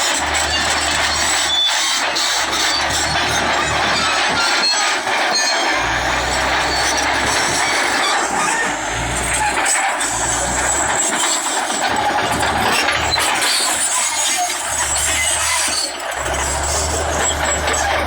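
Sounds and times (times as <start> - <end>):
bulldozer engine drone: 0.0 - 18.0
harsh gritty noise: 0.0 - 18.0.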